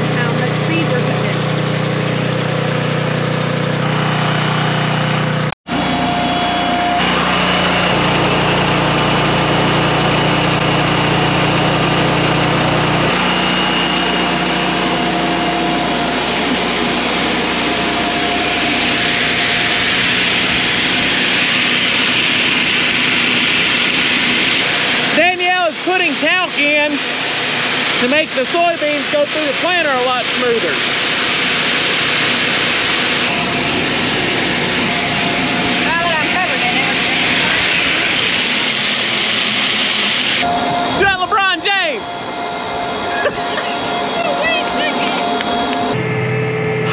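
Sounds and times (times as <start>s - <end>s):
engine running: 0.0s - 46.9s.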